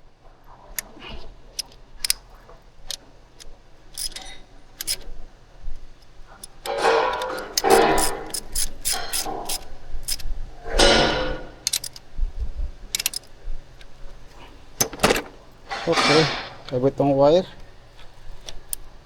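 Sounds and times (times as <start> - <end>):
clicks and taps of parts and tools: 1.6 - 5.1, 6.0 - 12.1, 12.9 - 13.9, 14.8 - 16.8
scraping and handling noise: 5.8 - 19.0.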